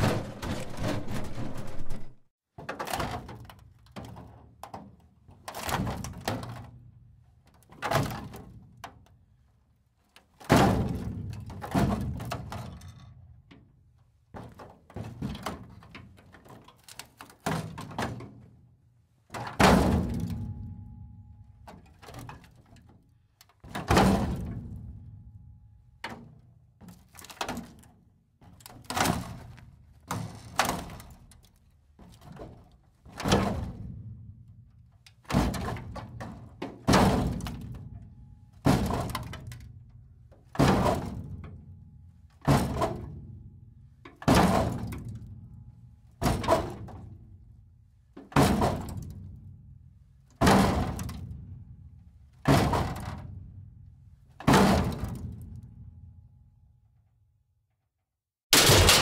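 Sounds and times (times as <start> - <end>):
heavy echoing impacts: 58.6 - 59.0.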